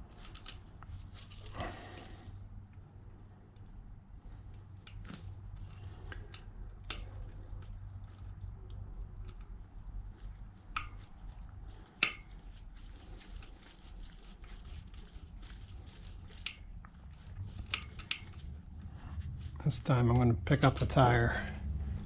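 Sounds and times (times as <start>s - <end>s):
low steady hum: 0.0s - 22.0s
tools clicking and tapping: 11.9s - 12.4s, 17.6s - 18.5s.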